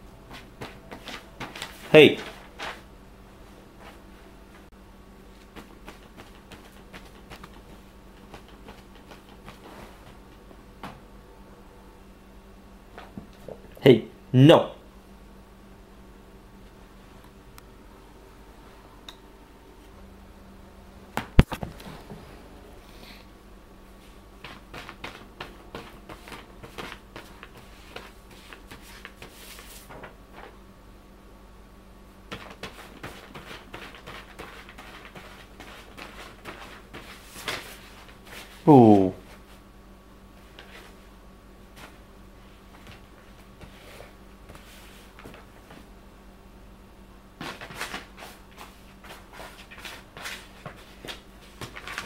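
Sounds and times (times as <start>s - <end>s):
paper rustling and scraping: 0.3s - 2.9s, 24.4s - 30.6s, 32.3s - 38.6s, 47.4s - 52.0s.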